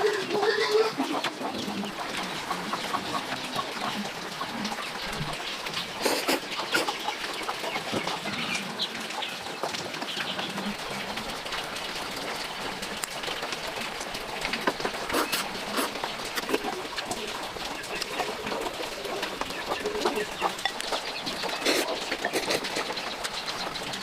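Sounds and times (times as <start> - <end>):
chickens clucking: 0.0 - 24.0
knocks and rustling: 1.2 - 8.5, 9.5 - 24.0.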